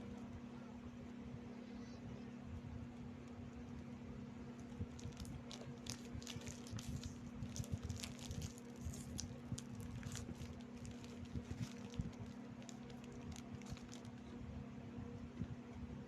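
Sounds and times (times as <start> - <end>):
low steady hum: 0.0 - 16.0
crackers being chewed: 4.6 - 14.3.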